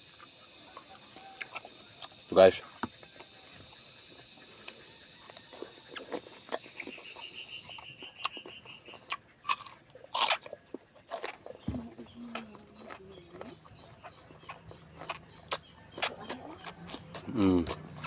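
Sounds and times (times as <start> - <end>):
crunchy chewing: 0.0 - 18.0.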